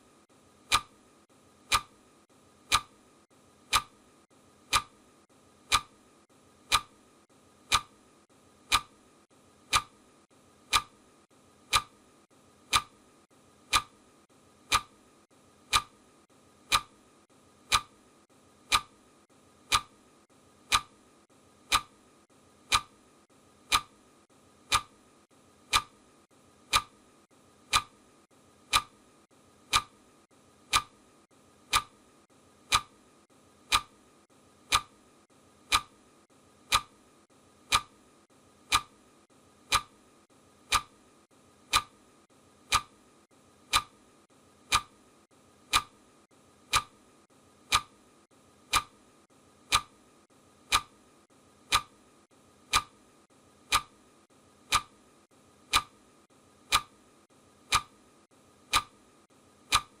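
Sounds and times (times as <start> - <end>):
clock ticking: 0.6 - 1.0, 1.6 - 2.0, 2.6 - 3.0, 3.6 - 4.0, 4.6 - 5.0, 5.6 - 6.0, 6.6 - 7.0, 7.6 - 8.0, 8.6 - 9.0, 9.6 - 10.0, 10.6 - 11.0, 11.6 - 12.0, 12.6 - 13.0, 13.6 - 14.0, 14.6 - 15.0, 15.6 - 16.0, 16.6 - 17.0, 17.6 - 18.0, 18.6 - 19.0, 19.6 - 20.0, 20.6 - 21.0, 21.6 - 22.0, 22.6 - 23.0, 23.6 - 24.0, 24.6 - 25.0, 25.6 - 26.0, 26.6 - 27.0, 27.6 - 28.0, 28.6 - 29.0, 29.6 - 30.0, 30.6 - 31.0, 31.6 - 32.0, 32.6 - 33.0, 33.6 - 34.0, 34.6 - 35.0, 35.6 - 36.0, 36.6 - 37.0, 37.6 - 38.0, 38.6 - 39.0, 39.6 - 40.0, 40.6 - 41.0, 41.6 - 42.0, 42.7 - 43.0, 43.6 - 44.0, 44.7 - 45.0, 45.7 - 46.0, 46.7 - 47.0, 47.7 - 48.0, 48.6 - 49.0, 49.7 - 50.0, 50.6 - 51.0, 51.6 - 52.0, 52.7 - 53.0, 53.7 - 54.0, 54.7 - 55.0, 55.7 - 56.0, 56.7 - 57.0, 57.7 - 58.0, 58.7 - 59.0, 59.7 - 60.0.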